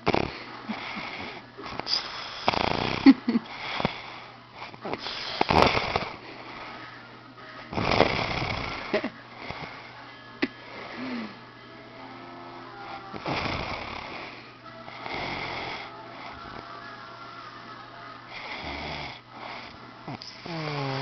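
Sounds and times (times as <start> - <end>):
man snoring loudly: 0.0 - 6.7, 7.7 - 9.9, 12.0 - 16.6, 18.3 - 21.0
steady low hum: 0.0 - 21.0.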